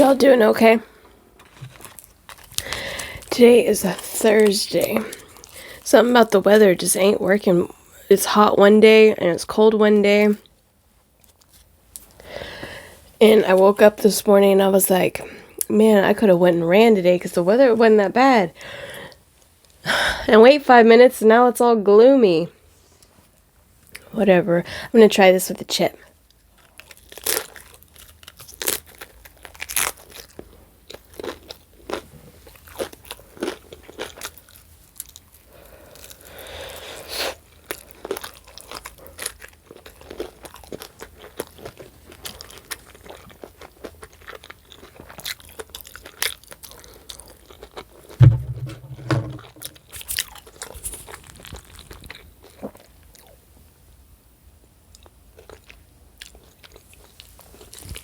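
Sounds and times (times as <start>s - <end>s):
chewing and crunching chip: 1.4s - 5.8s, 26.0s - 48.1s, 49.9s - 53.4s, 54.9s - 58.0s
brief low hum: 48.2s - 49.7s.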